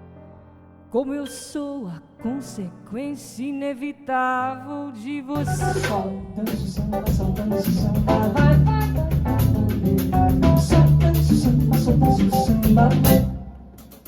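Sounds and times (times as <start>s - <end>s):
bass: 5.4s - 14.0s
drum kit beat: 5.4s - 14.0s.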